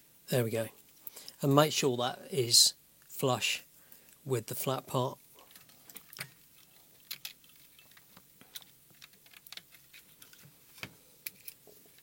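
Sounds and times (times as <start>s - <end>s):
plastic parts clicking into place: 7.0s - 12.0s.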